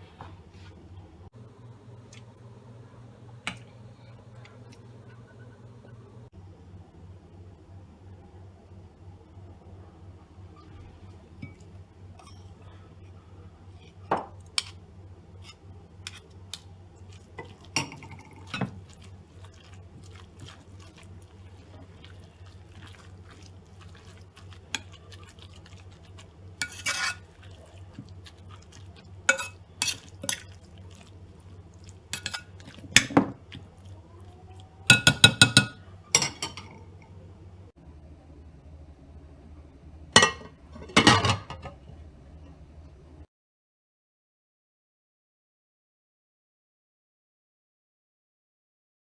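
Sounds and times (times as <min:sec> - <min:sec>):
low steady hum: 0:01.0 - 0:43.2
spoon clinking against glass: 0:26.6 - 0:27.2, 0:29.3 - 0:30.4, 0:32.2 - 0:33.2, 0:34.9 - 0:36.7.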